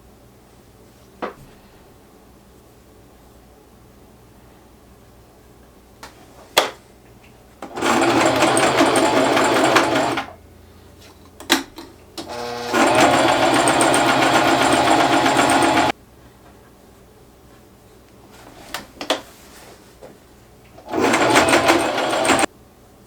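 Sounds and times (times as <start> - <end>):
sewing machine stitching: 7.6 - 10.4, 12.2 - 15.9, 20.8 - 22.5.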